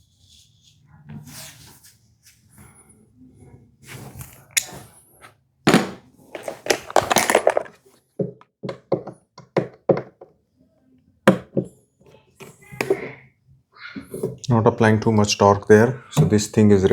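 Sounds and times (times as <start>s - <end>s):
wooden knocks: 5.7s - 10.3s.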